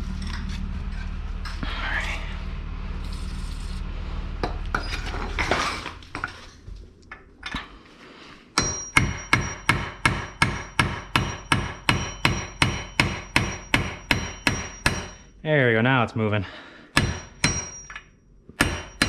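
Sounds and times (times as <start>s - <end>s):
metal scraping: 0.0s - 7.9s
hammer striking metal punch: 8.6s - 15.3s, 17.0s - 19.0s.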